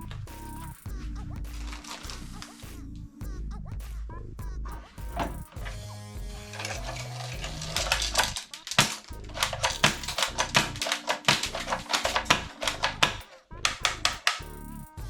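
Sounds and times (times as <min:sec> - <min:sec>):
background music with bass line: 0:00.0 - 0:08.4, 0:09.0 - 0:15.0
sharp clicks: 0:06.6 - 0:15.0.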